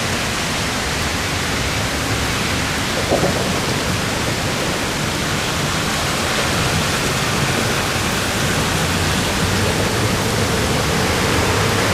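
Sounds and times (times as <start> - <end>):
water rushing: 0.0 - 11.9.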